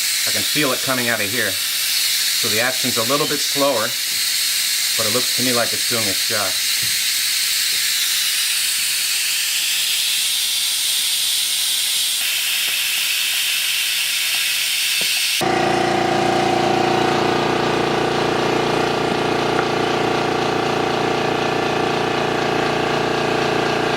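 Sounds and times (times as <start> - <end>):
compressed air hissing: 0.0 - 15.5
motor-driven machine hum: 15.4 - 23.9.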